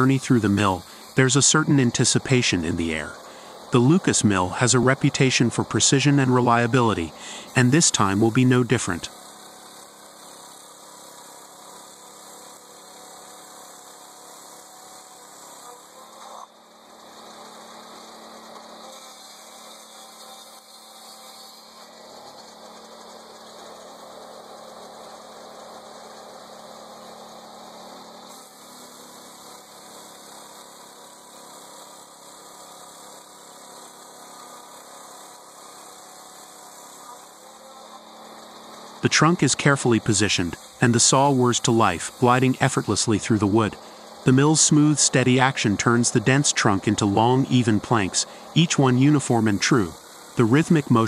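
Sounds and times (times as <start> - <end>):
engine humming steadily: 0.0 - 9.3, 38.2 - 51.0.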